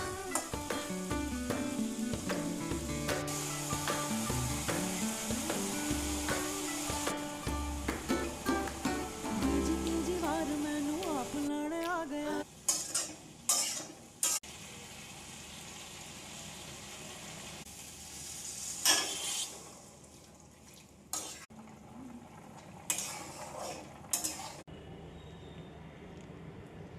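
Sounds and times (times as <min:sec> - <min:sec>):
food sizzling: 0:00.0 - 0:24.7
metal spoon scraping pan: 0:12.7 - 0:14.4, 0:22.9 - 0:24.6.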